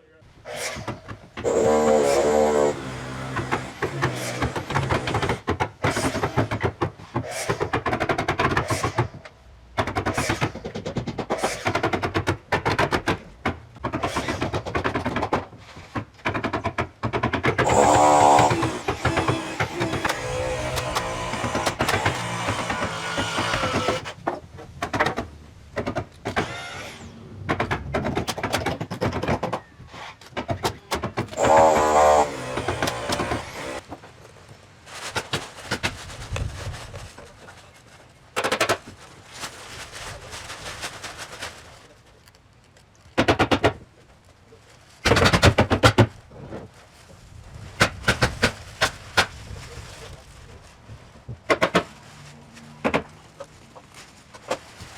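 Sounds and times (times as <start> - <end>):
power tool whine: 0.5 - 5.4, 17.6 - 24.2, 31.4 - 33.8
hammer nailing wood: 0.6 - 9.1, 9.8 - 24.2, 30.4 - 33.8.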